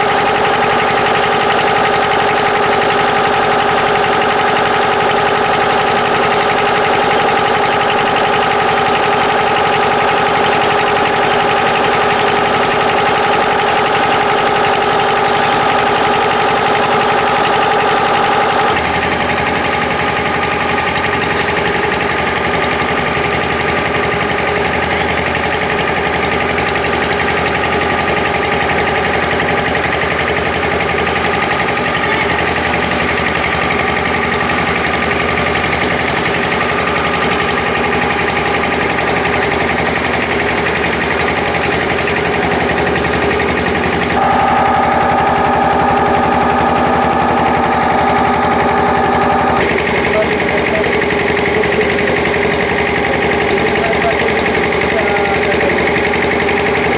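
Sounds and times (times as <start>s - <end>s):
engine humming: 31.8s - 56.9s.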